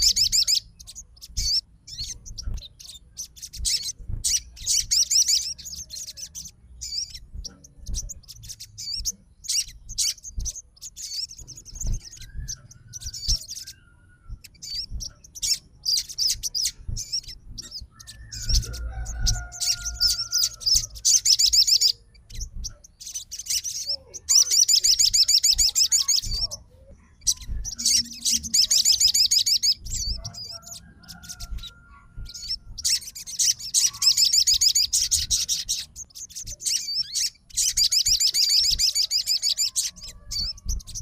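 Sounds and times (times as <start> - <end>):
bird twittering trills: 0.0 - 41.0.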